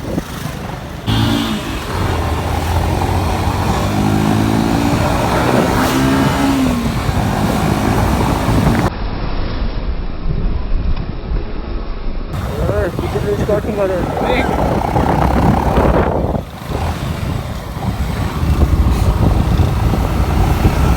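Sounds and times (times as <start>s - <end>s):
motorcycle engine riding: 0.0s - 8.9s, 12.4s - 20.9s
road noise: 0.0s - 10.1s, 12.4s - 20.9s.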